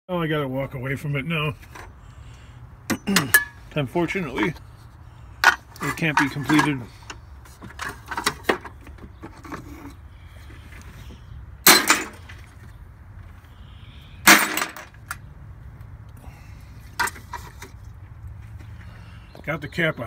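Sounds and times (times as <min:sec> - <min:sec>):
loud clattering impacts: 0:11.6 - 0:12.4, 0:14.2 - 0:15.0.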